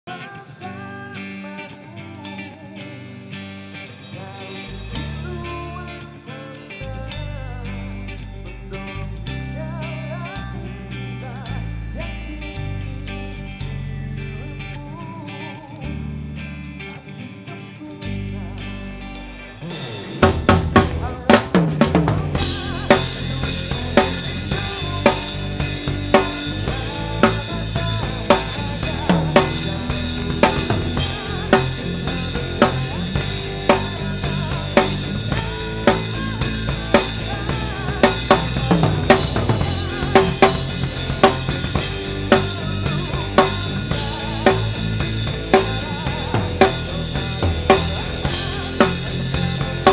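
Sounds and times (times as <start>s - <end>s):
band music: 0.1s - 49.9s
drum kit playing: 1.4s - 14.8s, 18.0s - 49.9s.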